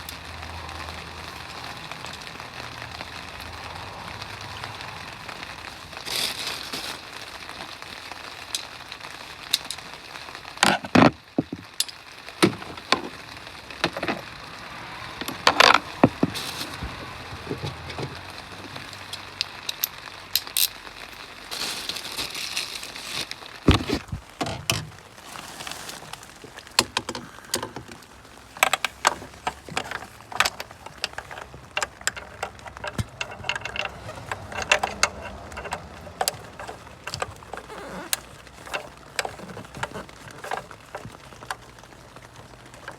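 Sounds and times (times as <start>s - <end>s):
rustling: 0.0s - 42.9s
tools and metal parts clanking: 15.2s - 20.8s, 28.6s - 41.6s.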